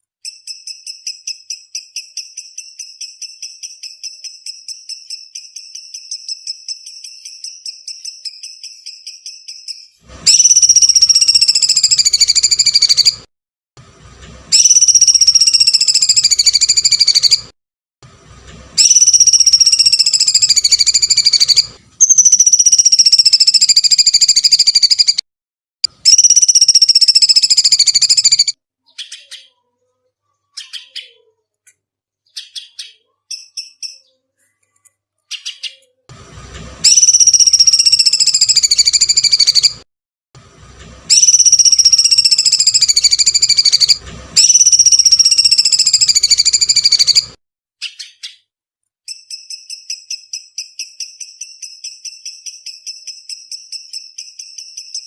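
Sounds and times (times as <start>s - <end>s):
faint bird chirps: 0.0s - 13.3s, 14.5s - 17.5s, 18.8s - 25.2s, 26.0s - 36.0s, 36.8s - 39.8s, 41.1s - 48.5s, 49.1s - 55.0s
songbird buzzy screech calls: 0.3s - 13.3s, 14.5s - 17.5s, 18.8s - 25.2s, 26.0s - 29.5s, 36.8s - 39.8s, 41.1s - 48.3s.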